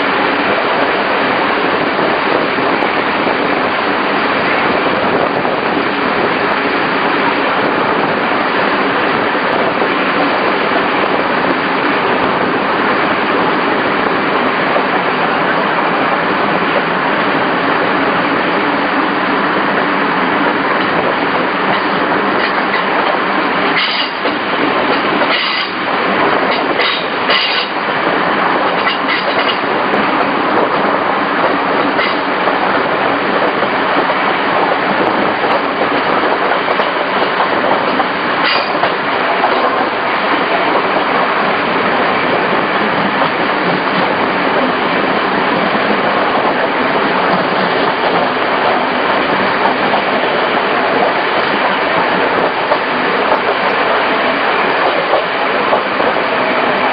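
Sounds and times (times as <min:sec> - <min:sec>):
train rumble and rail noise: 0:00.0 - 0:56.9
clacks over rail joints: 0:20.7 - 0:56.9.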